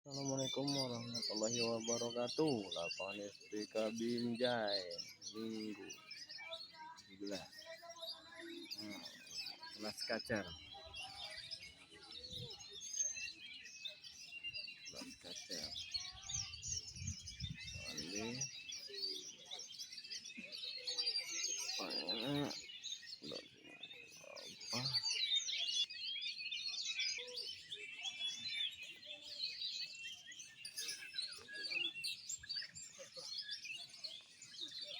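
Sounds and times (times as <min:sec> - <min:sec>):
low human voices: 0:00.1 - 0:13.0, 0:14.8 - 0:18.6, 0:20.2 - 0:25.2
birds chirping and whistling: 0:00.1 - 0:34.9.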